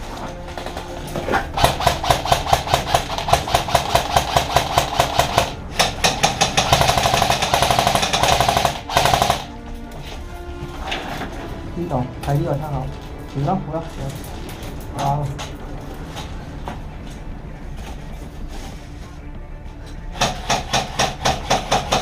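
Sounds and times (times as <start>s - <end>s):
airsoft gun automatic fire: 1.6s - 9.5s.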